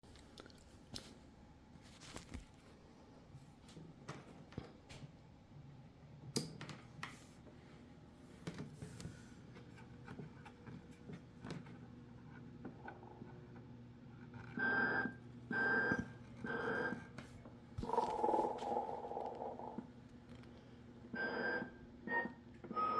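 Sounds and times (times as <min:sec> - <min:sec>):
low steady hum: 0:06.9 - 0:21.2.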